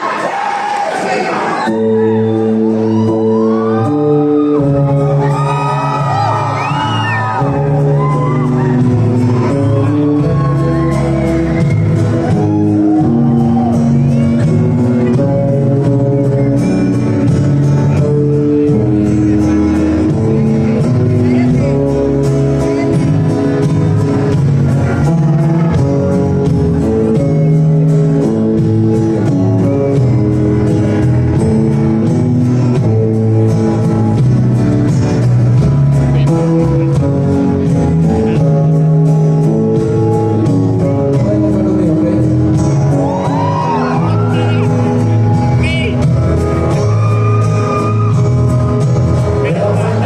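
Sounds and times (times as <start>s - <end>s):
bass: 0.0s - 50.0s
strummed guitar: 1.7s - 50.0s
person singing: 49.2s - 50.0s.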